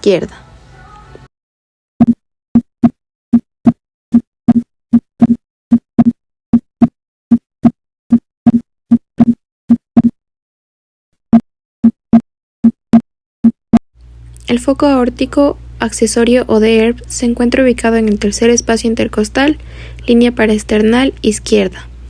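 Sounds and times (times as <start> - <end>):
heartbeat lub-dub: 3.6 - 6.9.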